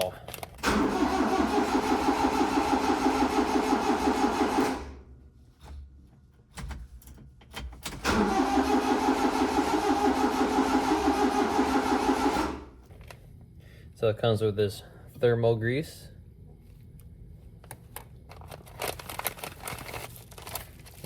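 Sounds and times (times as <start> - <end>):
engine cranking on starter: 0.6 - 5.1, 7.8 - 12.8.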